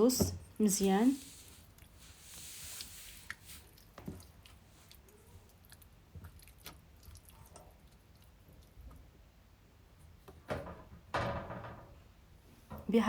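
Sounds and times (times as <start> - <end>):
wet squishing of hands: 1.5 - 9.1.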